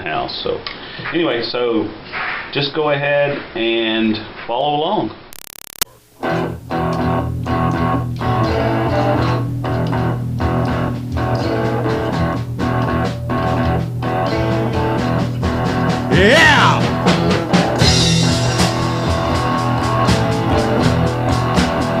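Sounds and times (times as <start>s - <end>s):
instrumental rock music: 6.2s - 22.0s.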